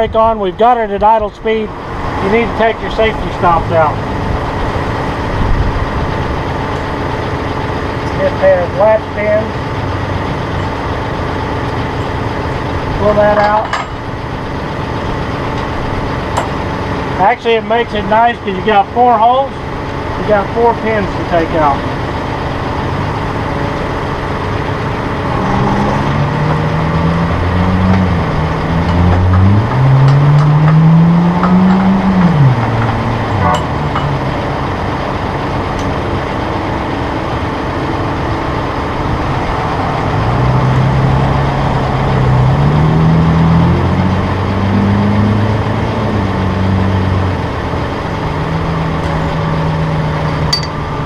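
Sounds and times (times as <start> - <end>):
diesel tractor engine idling: 0.0 - 51.0.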